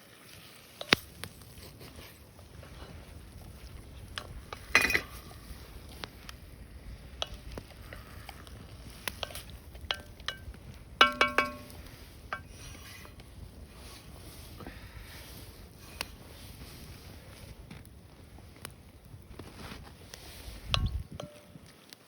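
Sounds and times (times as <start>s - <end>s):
utensil scraping metal pan: 4.2s - 5.6s, 11.0s - 13.2s
ringing metal clink: 4.7s - 5.3s, 11.0s - 12.4s.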